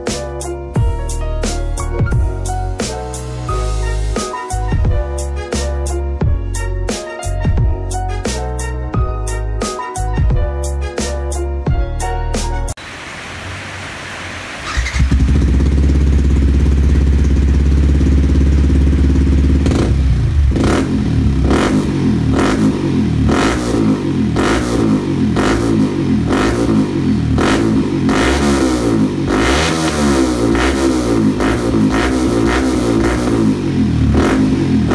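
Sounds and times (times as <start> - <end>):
motorcycle engine idling and revving: 14.6 - 34.9.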